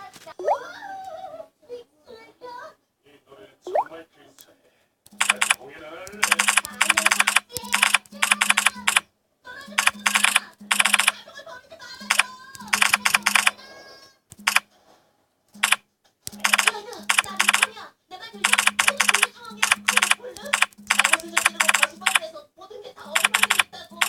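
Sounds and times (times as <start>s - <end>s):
smartphone key-tap clicks: 5.1s - 9.0s, 9.8s - 11.2s, 12.0s - 13.6s, 18.4s - 22.2s.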